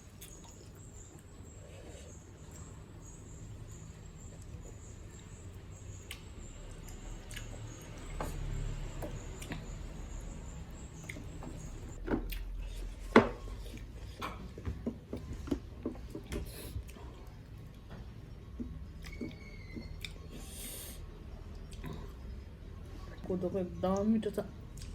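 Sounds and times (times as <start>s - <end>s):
chewing and mouth smacking: 5.9s - 8.1s.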